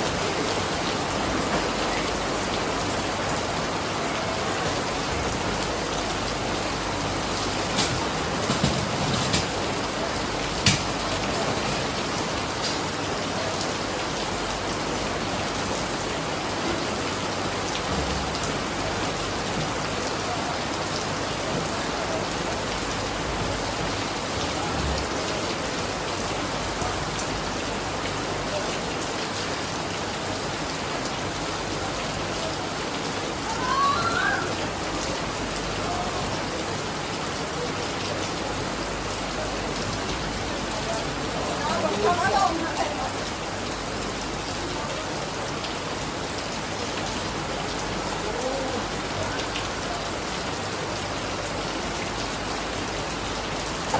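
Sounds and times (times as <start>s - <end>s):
steady rain falling: 0.0s - 53.9s.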